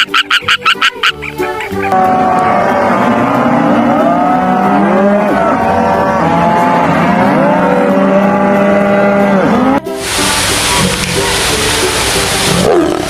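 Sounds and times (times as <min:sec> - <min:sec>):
cattle mooing: 0:01.9 - 0:09.8.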